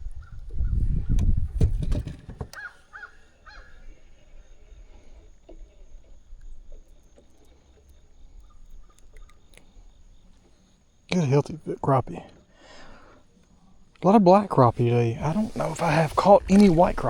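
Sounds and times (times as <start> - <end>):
water splashing: 14.8 - 17.0.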